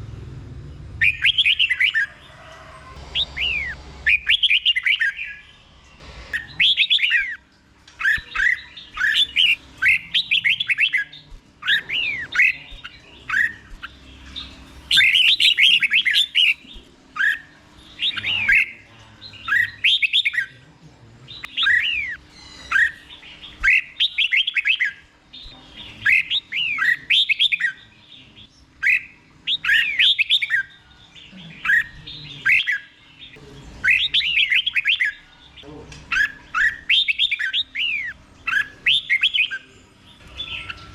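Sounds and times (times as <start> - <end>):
bird singing whistled phrases: 21.5 - 25.0, 36.1 - 39.7.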